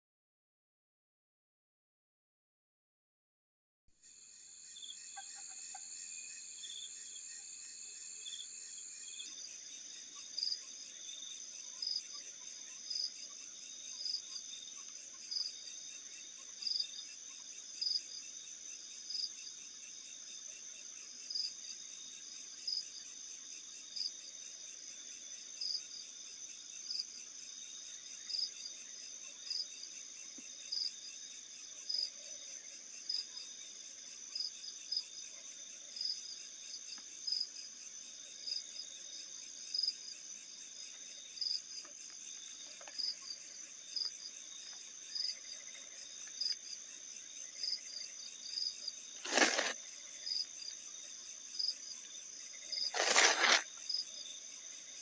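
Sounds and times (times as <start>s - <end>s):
crickets trilling: 25.2s - 55.0s.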